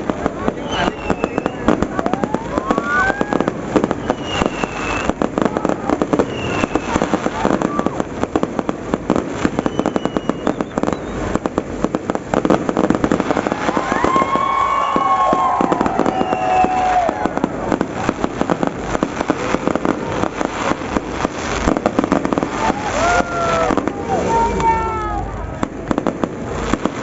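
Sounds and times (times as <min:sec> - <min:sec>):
fireworks crackling: 0:00.0 - 0:27.0.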